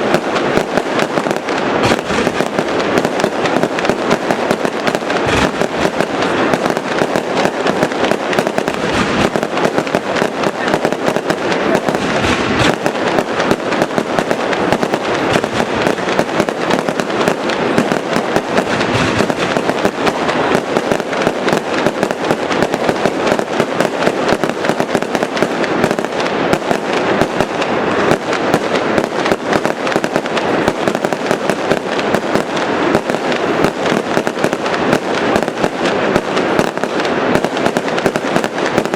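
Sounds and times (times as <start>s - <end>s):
fireworks bangs and crackling: 0.0s - 38.9s.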